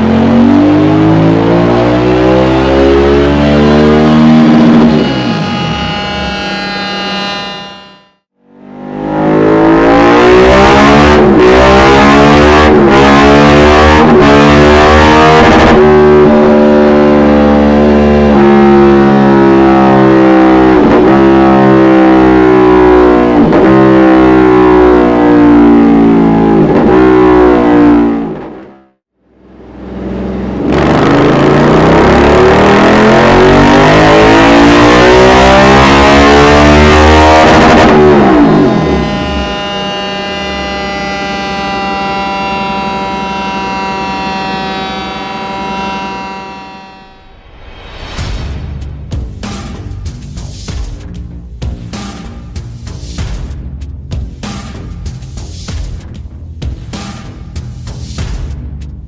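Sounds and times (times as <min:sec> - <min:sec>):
motorcycle engine revving on dyno: 0:00.0 - 0:47.2.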